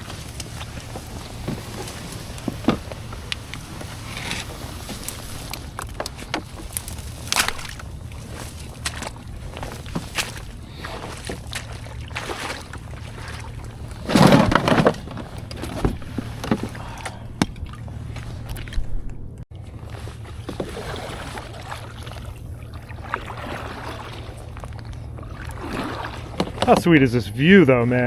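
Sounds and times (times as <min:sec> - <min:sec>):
gear rustling and knocking: 0:00.0 - 0:11.8, 0:12.4 - 0:19.4.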